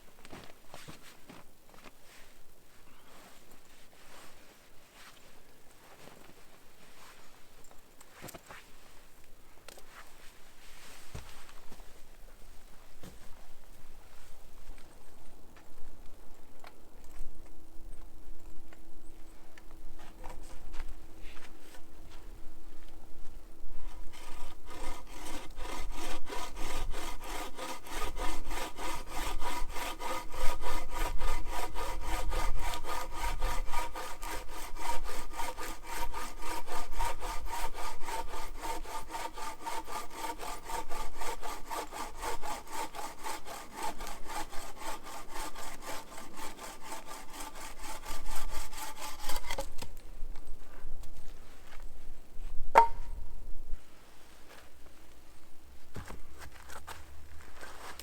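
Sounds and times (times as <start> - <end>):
hand saw cutting wood: 23.9 - 49.9.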